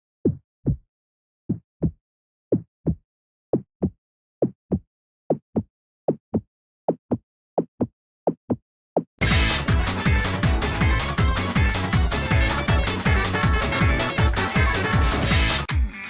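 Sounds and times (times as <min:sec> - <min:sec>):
heartbeat thuds: 0:01.5 - 0:07.2.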